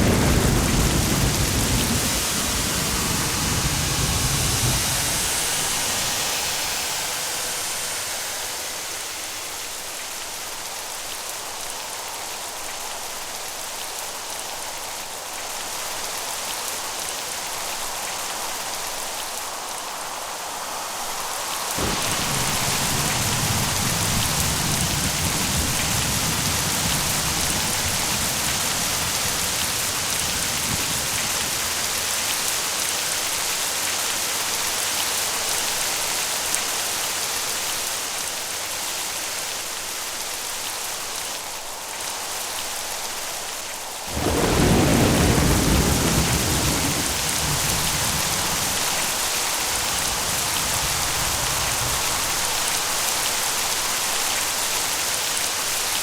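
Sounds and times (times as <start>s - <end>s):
thunder crack: 0.0s - 8.8s, 21.8s - 32.3s, 44.1s - 52.5s
thunder rumbling: 0.0s - 9.0s, 21.8s - 32.6s, 44.1s - 52.9s
rain hissing: 0.0s - 56.0s.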